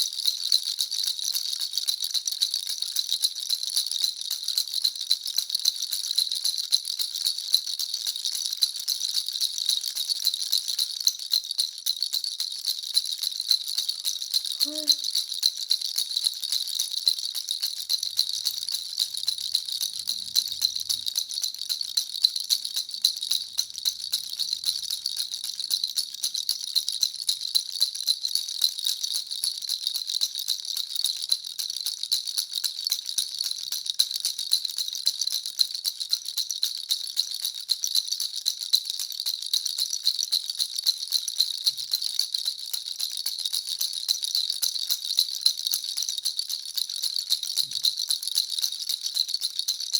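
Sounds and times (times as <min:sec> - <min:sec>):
baby rattle shaking: 0:00.0 - 0:49.9.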